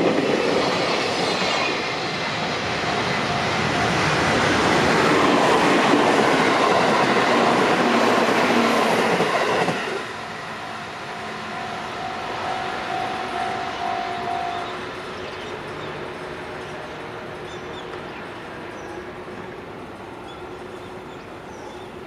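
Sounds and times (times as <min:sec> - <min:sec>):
train wagons clattering on rails: 0:00.0 - 0:10.1
level crossing alarm bell: 0:10.1 - 0:14.8.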